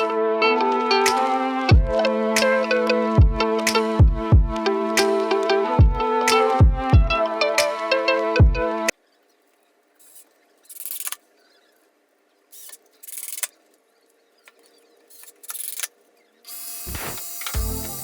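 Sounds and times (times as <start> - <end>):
background music: 0.0 - 8.9, 17.0 - 18.0.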